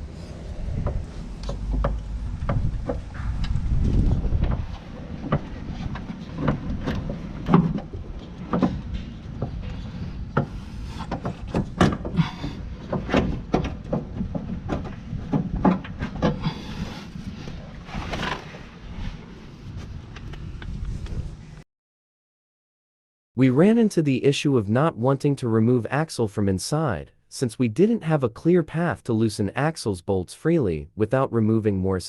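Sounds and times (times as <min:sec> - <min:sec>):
steady low rumble: 0:00.0 - 0:21.6.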